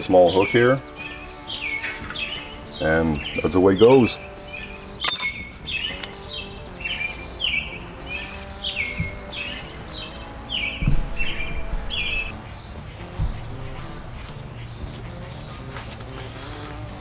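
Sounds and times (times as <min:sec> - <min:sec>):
bird chirping: 0:00.0 - 0:17.0
low thump: 0:10.8 - 0:12.4, 0:13.1 - 0:14.2.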